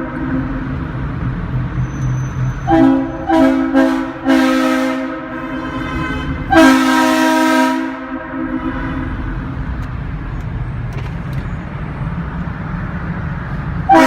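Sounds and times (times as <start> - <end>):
locomotive air horn blasts: 2.6 - 9.4.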